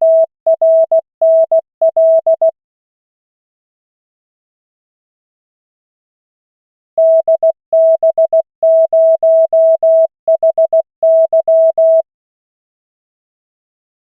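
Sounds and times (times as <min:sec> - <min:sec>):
morse code tone: 0:00.0 - 0:02.5, 0:07.0 - 0:12.0.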